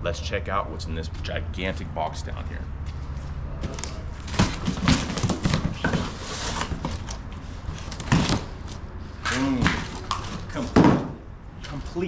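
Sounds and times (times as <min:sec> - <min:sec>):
cardboard scraping and rustling: 0:03.6 - 0:08.8
cardboard box knocks and clicks: 0:03.7 - 0:07.1, 0:07.9 - 0:08.5.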